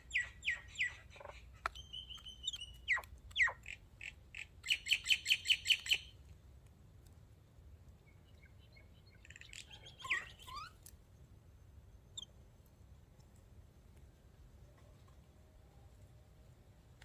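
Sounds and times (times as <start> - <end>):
birds chirping: 0.0 - 6.1, 8.0 - 10.8, 11.9 - 12.3.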